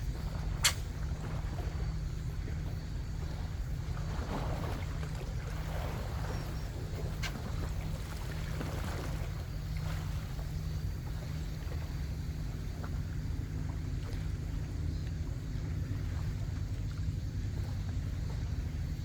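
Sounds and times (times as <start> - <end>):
sea washing: 0.0 - 18.9
sharp click: 0.6 - 0.9.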